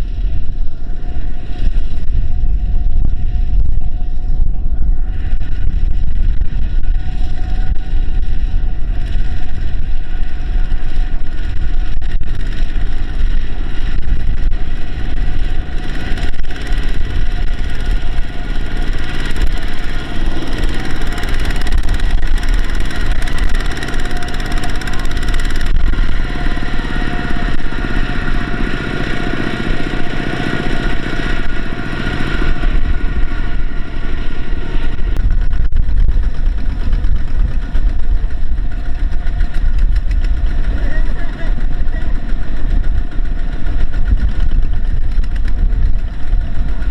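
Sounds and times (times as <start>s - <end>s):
heavy diesel engine rumbling: 0.0s - 46.9s
machinery whine: 0.0s - 46.9s.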